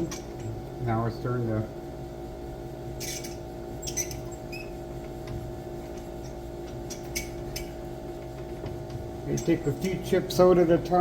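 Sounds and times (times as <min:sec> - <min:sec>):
tool bit scraping metal: 0:03.0 - 0:04.7.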